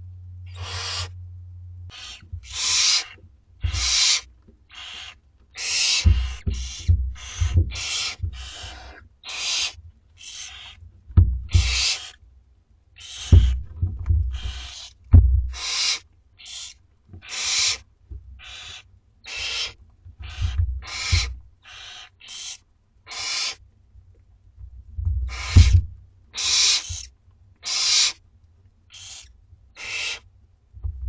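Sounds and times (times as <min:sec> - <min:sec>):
owl nestlings hissing: 0:00.5 - 0:01.2, 0:01.9 - 0:10.8, 0:11.5 - 0:12.2, 0:13.0 - 0:13.7, 0:14.3 - 0:17.8, 0:18.4 - 0:23.6, 0:25.2 - 0:28.2, 0:28.9 - 0:30.3
low thumps: 0:03.6 - 0:03.9, 0:06.0 - 0:08.6, 0:11.1 - 0:11.9, 0:13.2 - 0:15.6, 0:20.2 - 0:21.5, 0:24.6 - 0:26.0, 0:30.8 - 0:31.0.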